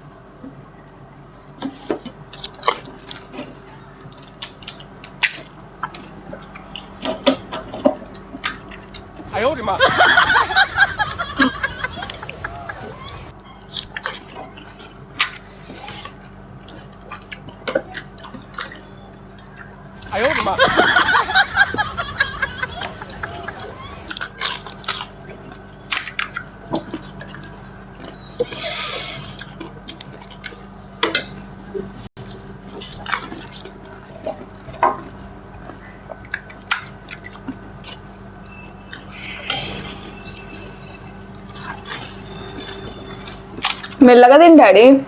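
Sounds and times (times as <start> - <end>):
steady low hum: 0.0 - 45.0
food crunching: 1.4 - 44.1
wet squishes: 1.6 - 31.6
plates and dishes clinking: 13.7 - 35.8.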